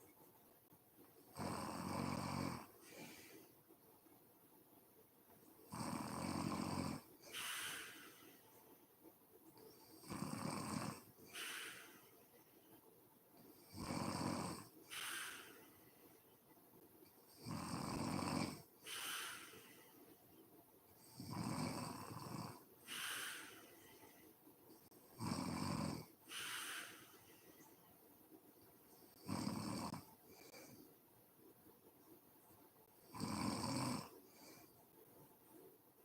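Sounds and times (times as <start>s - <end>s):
woman snoring: 1.3s - 3.4s, 5.7s - 8.3s, 9.9s - 12.0s, 13.6s - 15.6s, 17.3s - 19.9s, 21.0s - 24.2s, 25.2s - 27.3s, 29.1s - 30.8s, 33.0s - 34.7s
hissy breath: 7.2s - 8.6s, 11.2s - 12.2s, 14.8s - 16.2s, 18.8s - 20.2s, 22.8s - 24.4s, 26.2s - 27.8s.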